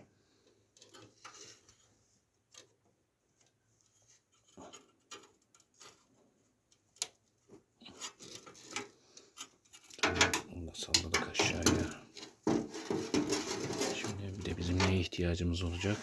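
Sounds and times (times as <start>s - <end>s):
cables rustling: 6.9s - 16.0s.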